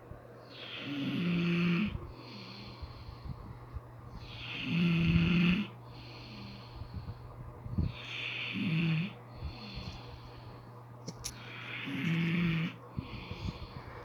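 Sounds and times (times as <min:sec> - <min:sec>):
man snoring: 0:00.5 - 0:02.8, 0:04.2 - 0:06.7, 0:07.9 - 0:10.0, 0:11.2 - 0:13.7.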